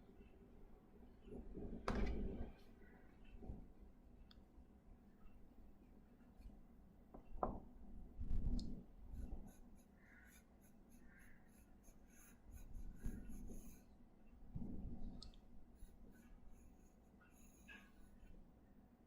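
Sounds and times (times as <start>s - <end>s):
pencil sketching on paper: 9.0s - 18.5s.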